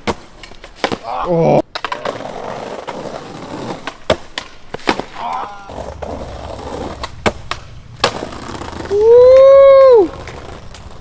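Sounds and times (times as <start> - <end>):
skateboard clacking on ground: 0.0 - 11.0
skateboard wheels rolling on concrete: 0.0 - 11.0.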